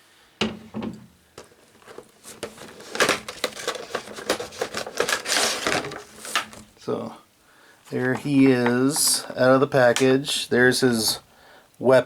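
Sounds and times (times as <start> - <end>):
packaging clicks: 1.4 - 6.8
packaging crinkling: 1.4 - 6.9.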